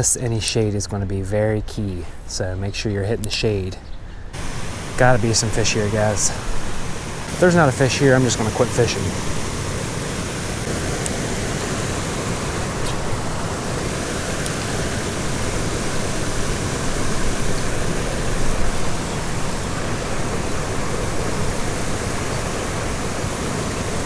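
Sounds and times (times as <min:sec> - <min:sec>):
creek water rushing: 0:04.3 - 0:24.0.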